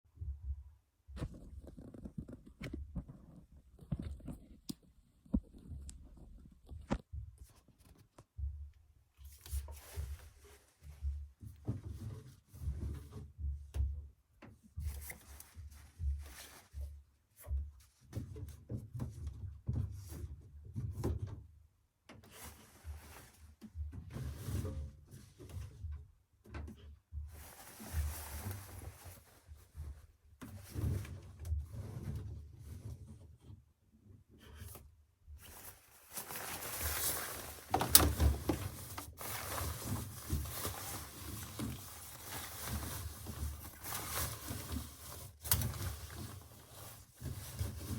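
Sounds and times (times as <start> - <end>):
laundry tumbling with low thuds: 35.4 - 47.9.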